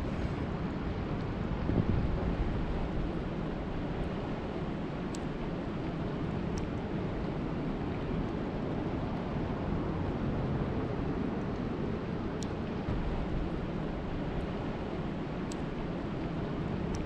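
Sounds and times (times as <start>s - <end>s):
wind buffeting microphone: 0.0s - 17.0s
faint ticks: 15.4s - 15.7s.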